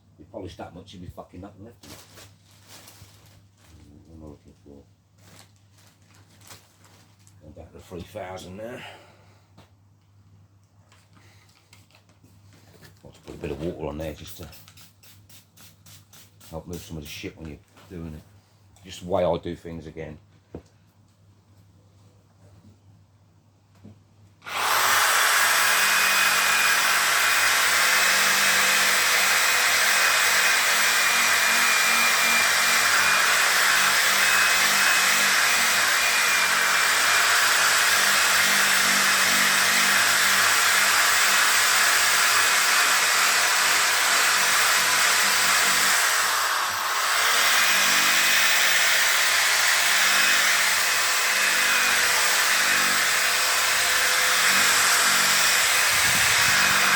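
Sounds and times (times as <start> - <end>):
electric power sander running: 24.4 - 56.9.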